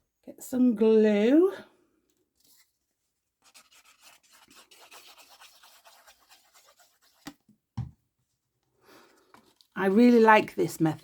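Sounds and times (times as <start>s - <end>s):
scratching and rustling of card: 2.4s - 7.5s, 9.0s - 10.2s.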